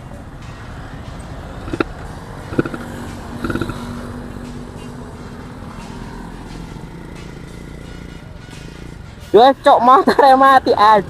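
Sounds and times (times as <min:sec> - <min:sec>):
two-stroke motorcycle engine: 0:00.2 - 0:11.0.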